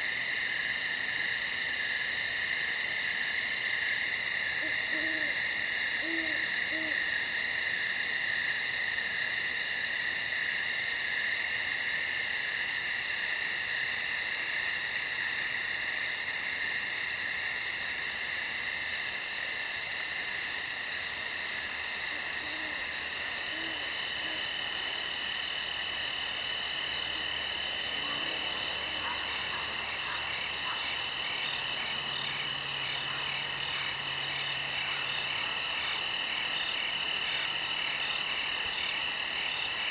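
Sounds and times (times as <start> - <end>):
insects trilling: 0.0 - 39.9
owl hoots: 4.6 - 5.4, 6.0 - 7.0, 23.5 - 24.4.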